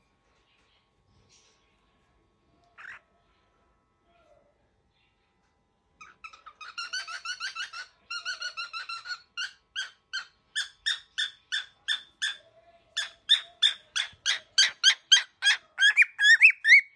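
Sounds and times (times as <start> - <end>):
cockatiel calling: 2.8 - 3.0, 6.0 - 12.4, 13.0 - 16.9.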